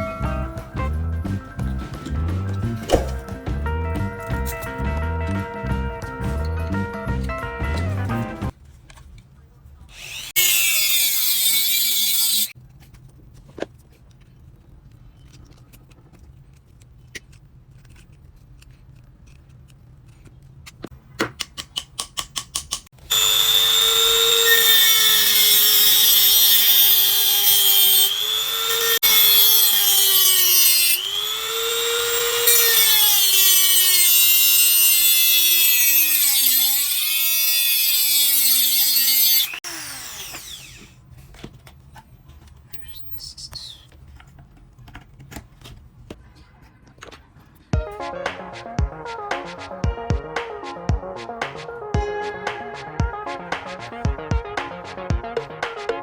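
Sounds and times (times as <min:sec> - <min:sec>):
electric power tool whining: 0:09.9 - 0:12.6, 0:23.0 - 0:41.0.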